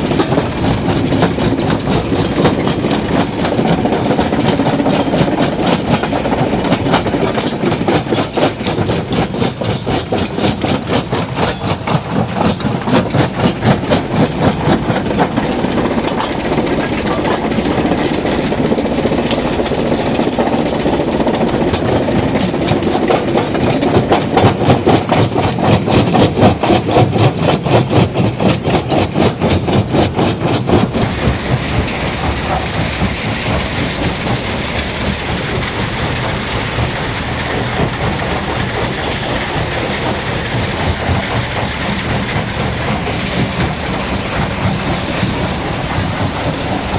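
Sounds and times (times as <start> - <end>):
stone crusher clattering: 0.0 - 34.9
machine rumble: 29.7 - 46.9.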